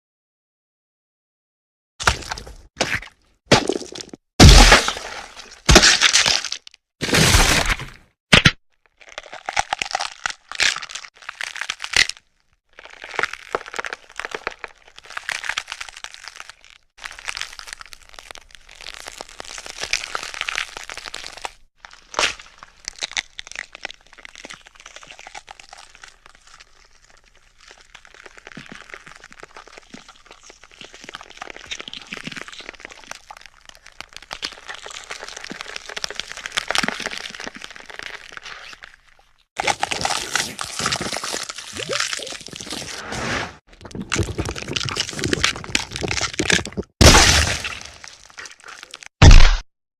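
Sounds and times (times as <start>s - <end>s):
crunching and crackling: 2.0s - 49.6s
wet squelching: 43.7s - 49.6s.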